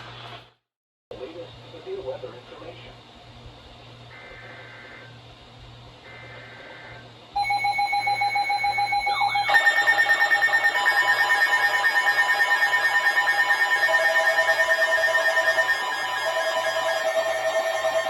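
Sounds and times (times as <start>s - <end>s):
alarm tones beeping: 7.4s - 18.0s.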